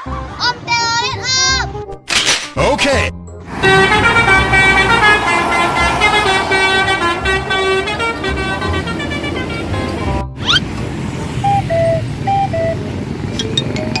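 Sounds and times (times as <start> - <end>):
low vehicle rumble: 3.4 - 14.0
bus horn playing a tune: 3.5 - 10.3.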